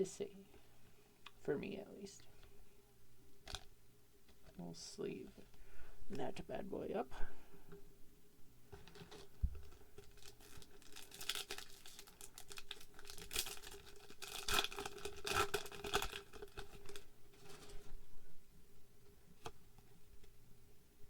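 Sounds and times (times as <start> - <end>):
foil wrapper crinkling and tearing: 8.8 - 17.9.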